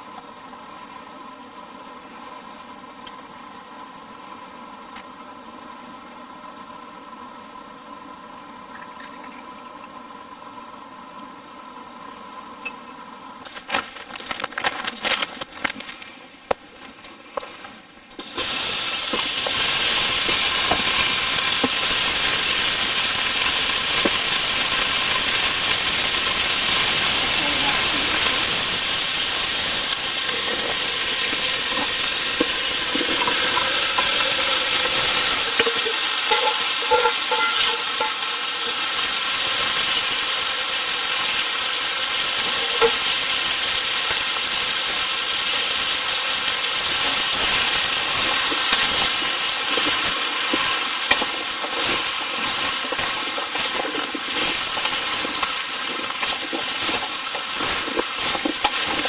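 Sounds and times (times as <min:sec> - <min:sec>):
crackles and pops: 0:13.4 - 0:59.0
food sizzling in a pan: 0:13.4 - 0:59.0.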